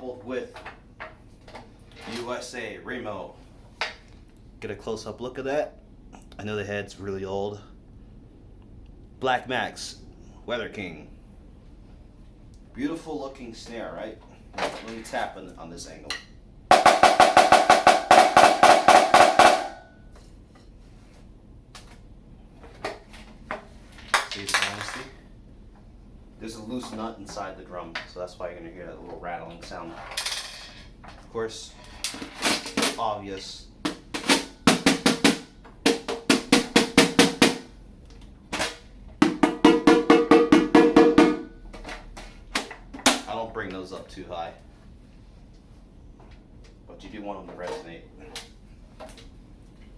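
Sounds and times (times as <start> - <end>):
snare drum roll: 16.7 - 19.8, 34.2 - 37.7, 39.2 - 41.5
rattle inside drum shell: 24.0 - 25.2.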